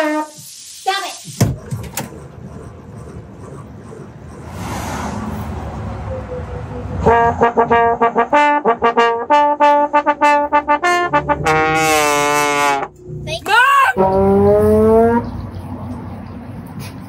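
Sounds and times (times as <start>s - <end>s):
rushing hiss: 0.0s - 1.7s
trombone playing short notes: 7.0s - 12.9s.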